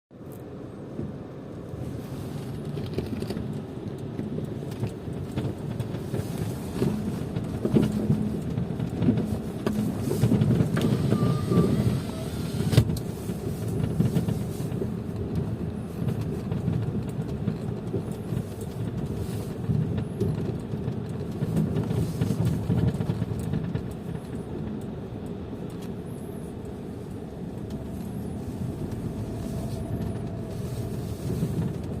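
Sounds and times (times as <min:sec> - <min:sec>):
car engine knocking: 0:04.2 - 0:12.0
rough low rumble: 0:26.0 - 0:32.0.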